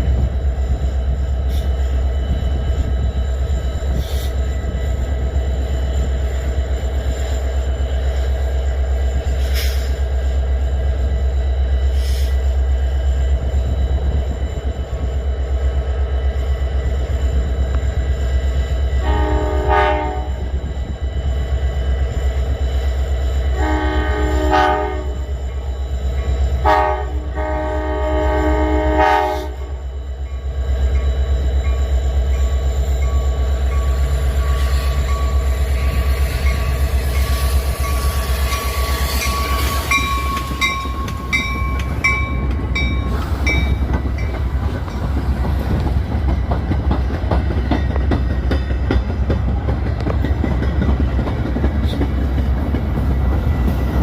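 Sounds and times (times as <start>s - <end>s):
diesel locomotive rumble: 0.0s - 54.0s
wheels clacking on rail: 11.9s - 54.0s
locomotive air horn: 19.0s - 20.5s, 23.5s - 25.2s, 26.6s - 29.8s.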